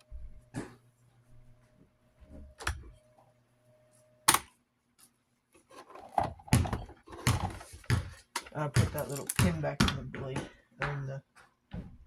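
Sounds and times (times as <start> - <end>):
parts being handled: 4.3 - 9.4.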